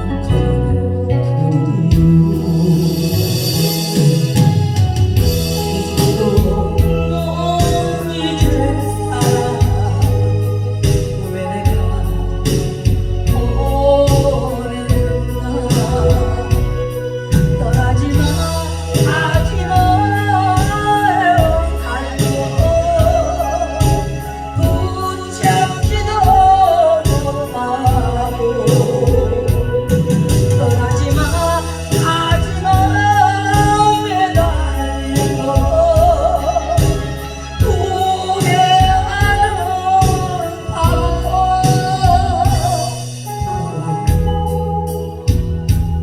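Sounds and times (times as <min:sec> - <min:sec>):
backing track with steady beat: 0:00.0 - 0:46.0
held bass notes: 0:00.0 - 0:46.0
person singing wavering melody: 0:05.2 - 0:45.6.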